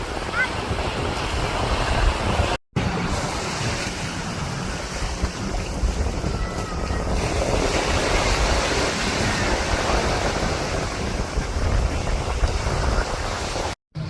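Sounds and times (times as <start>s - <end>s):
waves washing on beach: 0.0s - 13.8s
wind blowing across microphone: 0.0s - 13.8s.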